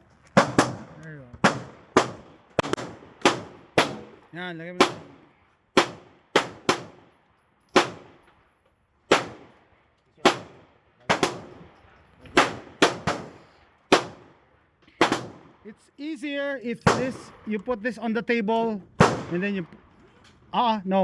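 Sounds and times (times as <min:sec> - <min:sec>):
gunshots with echo: 0:00.4 - 0:07.1, 0:07.8 - 0:08.3, 0:09.1 - 0:09.6, 0:10.2 - 0:11.7, 0:12.3 - 0:14.4, 0:15.0 - 0:15.7, 0:16.8 - 0:17.6, 0:18.9 - 0:19.8.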